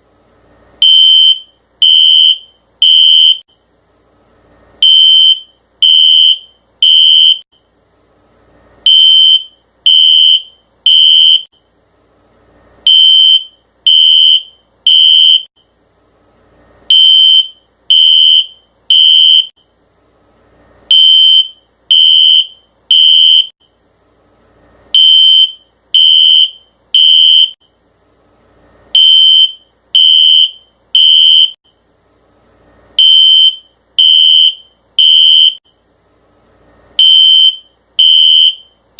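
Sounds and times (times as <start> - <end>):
fire alarm beeping: 0.8 - 3.5, 4.8 - 7.4, 8.9 - 11.5, 12.9 - 15.5, 16.9 - 19.5, 20.9 - 23.6, 25.0 - 27.6, 29.0 - 31.6, 33.0 - 35.6, 37.0 - 38.8.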